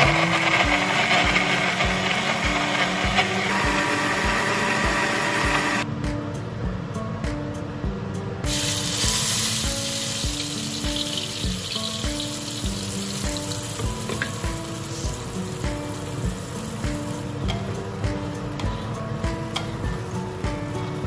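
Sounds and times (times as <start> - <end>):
background music with beat: 0.0 - 21.0
food sizzling in hot oil: 8.5 - 18.6.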